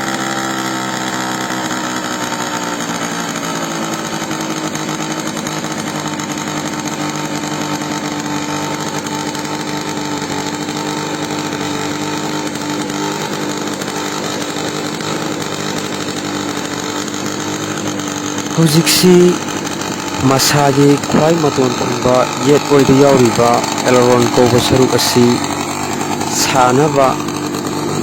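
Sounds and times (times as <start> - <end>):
model aircraft engine buzzing: 0.0 - 28.0.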